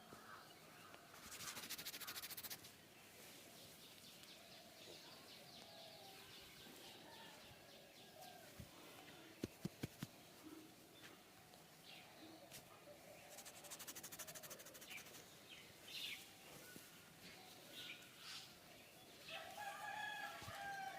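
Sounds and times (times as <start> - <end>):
faint birds chirping: 0.0 - 20.9
rapid scratchy strokes: 1.2 - 2.7, 13.2 - 15.3.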